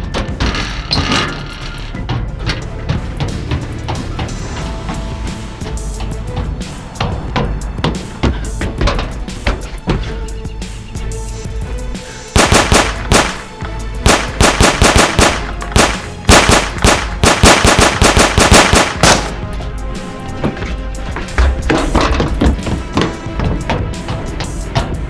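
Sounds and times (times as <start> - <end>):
background music: 0.0 - 25.0
automatic gunfire bursts: 12.4 - 19.4.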